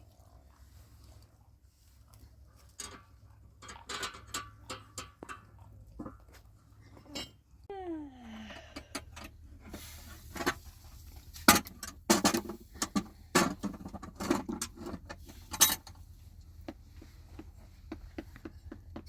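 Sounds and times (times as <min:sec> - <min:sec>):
sharp knocks and clatters: 0:11.4 - 0:16.0.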